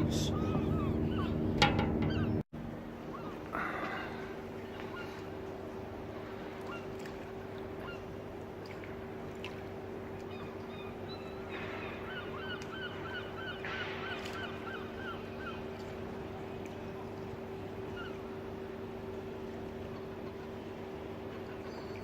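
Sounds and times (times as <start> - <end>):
bird calling: 0.0 - 2.4, 3.0 - 8.2, 10.2 - 18.8, 21.2 - 22.0
low machinery hum: 0.0 - 22.0.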